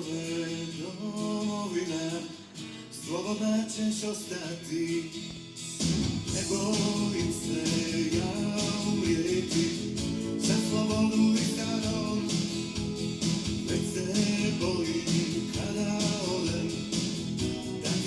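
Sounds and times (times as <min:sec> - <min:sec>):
background music: 0:04.1 - 0:18.0.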